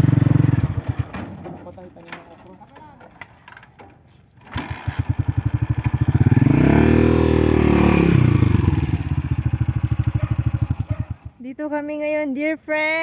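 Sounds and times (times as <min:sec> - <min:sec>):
motorcycle engine revving: 0:00.0 - 0:01.2, 0:04.4 - 0:11.4.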